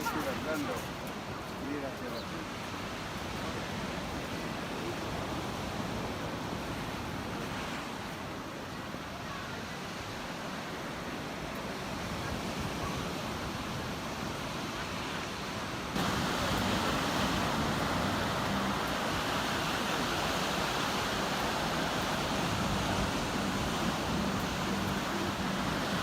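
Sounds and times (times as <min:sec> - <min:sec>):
surf washing onto beach: 0:00.0 - 0:26.0
wind on microphone: 0:15.9 - 0:26.0.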